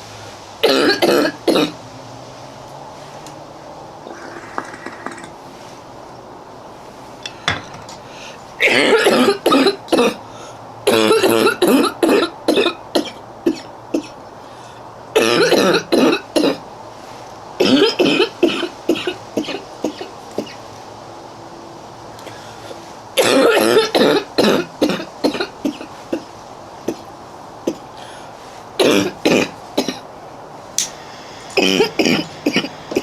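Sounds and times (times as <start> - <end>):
girl coughing: 0.6 - 1.8, 8.6 - 10.2, 10.9 - 14.2, 15.2 - 16.6, 23.2 - 25.9, 28.8 - 30.0, 31.6 - 33.0.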